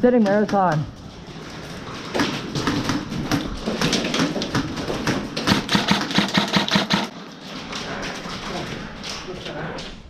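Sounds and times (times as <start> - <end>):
airsoft gun rapid shots: 5.5 - 7.1.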